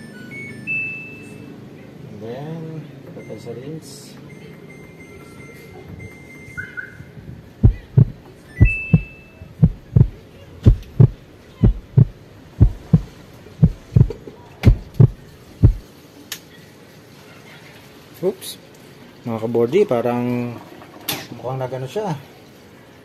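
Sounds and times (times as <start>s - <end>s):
washing machine knocking: 7.6s - 15.8s.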